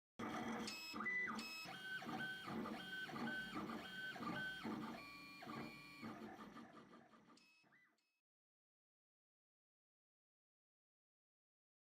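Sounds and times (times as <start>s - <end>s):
printer stepper motors whining: 0.2s - 7.3s.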